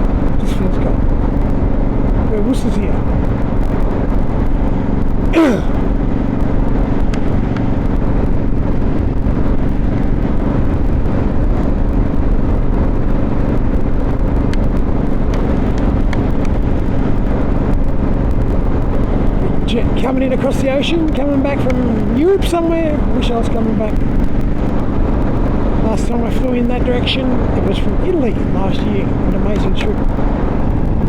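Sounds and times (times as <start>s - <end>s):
motorcycle engine cruising: 0.0s - 31.0s
wind and road noise: 0.0s - 31.0s.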